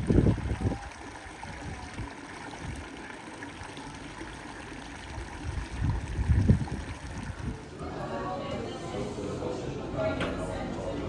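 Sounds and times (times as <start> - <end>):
water trickling: 0.0 - 8.8.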